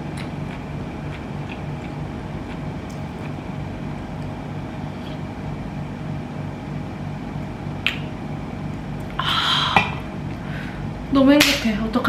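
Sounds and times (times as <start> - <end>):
pulsing mechanical hum: 0.0 - 9.2.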